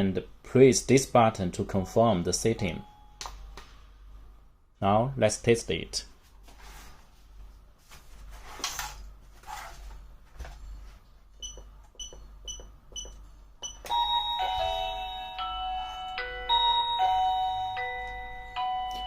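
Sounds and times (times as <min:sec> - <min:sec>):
short electronic key beeps: 0:11.4 - 0:14.0
intercom melodic ringtone: 0:13.9 - 0:19.0.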